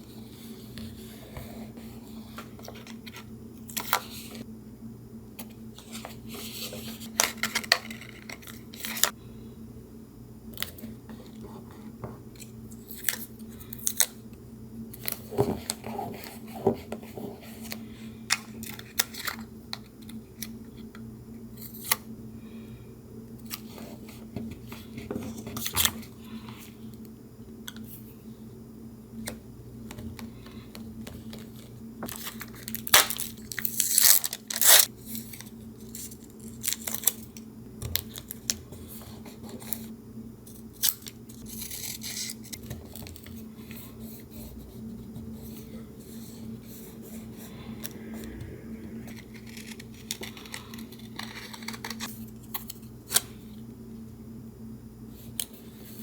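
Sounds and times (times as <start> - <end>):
steady low hum: 0.0 - 56.0
paper crackling and ripping: 32.1 - 34.9.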